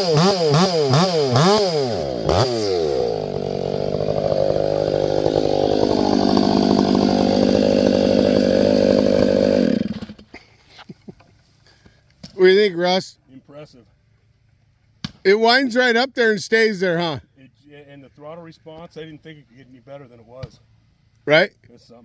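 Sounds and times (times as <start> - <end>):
chainsaw engine revving: 0.0 - 10.3.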